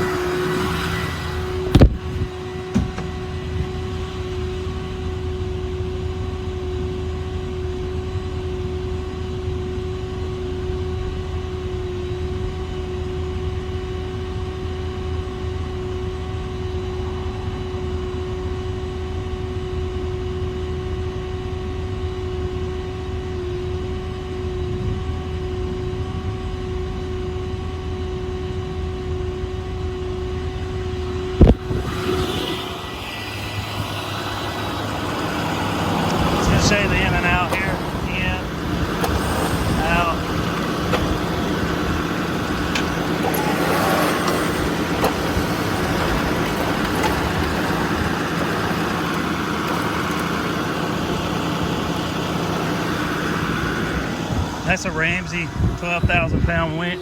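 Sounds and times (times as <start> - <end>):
winch whining: 0.0 - 6.2, 30.1 - 57.0
low engine rumble: 0.0 - 57.0.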